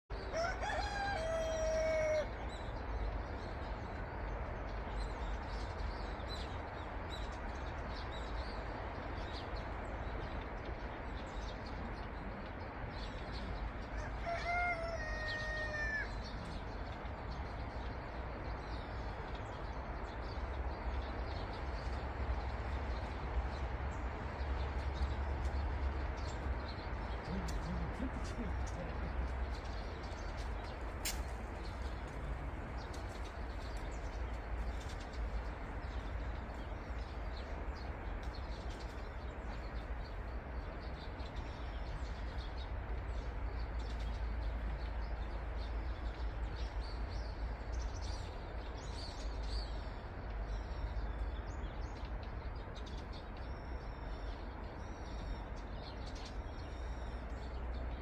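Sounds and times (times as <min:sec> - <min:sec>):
rooster crowing: 0:00.2 - 0:02.4, 0:13.9 - 0:16.2
small birds chirping: 0:01.2 - 0:58.0.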